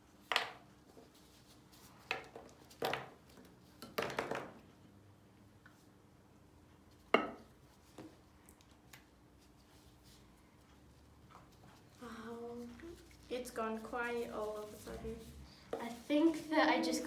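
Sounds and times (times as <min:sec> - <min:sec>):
tapping against a bowl: 0:07.2 - 0:07.5.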